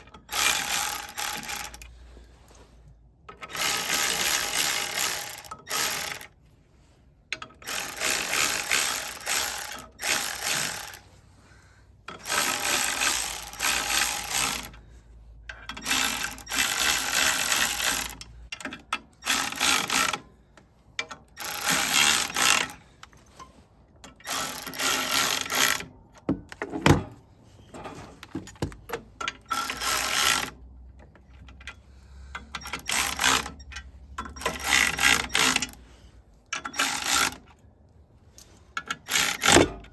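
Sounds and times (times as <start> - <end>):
ratcheting tool: 0.0 - 1.9, 3.3 - 6.3, 7.3 - 11.0, 12.1 - 14.8, 15.5 - 20.2, 21.0 - 23.2, 24.1 - 25.9, 28.2 - 35.8, 36.5 - 37.6, 38.3 - 39.9.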